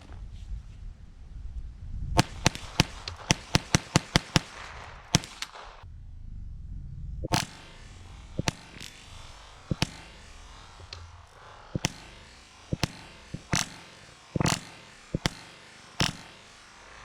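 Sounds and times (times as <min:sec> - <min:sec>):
pistol shots: 0:02.2 - 0:05.8, 0:07.3 - 0:17.0.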